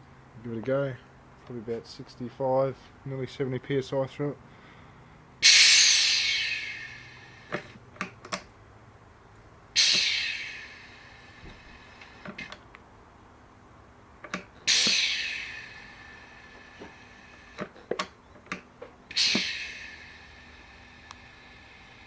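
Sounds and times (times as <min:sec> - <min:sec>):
compressed air hissing: 0:05.4 - 0:08.4, 0:09.7 - 0:12.7, 0:13.6 - 0:22.0.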